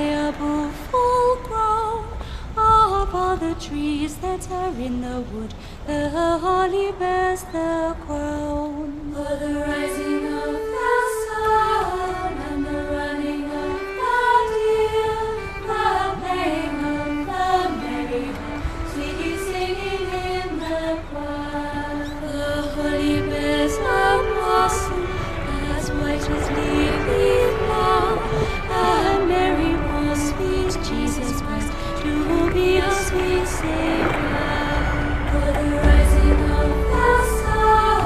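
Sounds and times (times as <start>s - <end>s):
woman singing slow melody: 0.0s - 38.0s.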